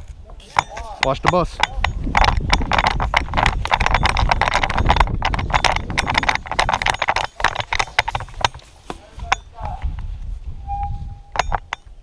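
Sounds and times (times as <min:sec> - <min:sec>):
gear rattling: 0:00.0 - 0:12.0
low microphone rumble: 0:09.0 - 0:12.0.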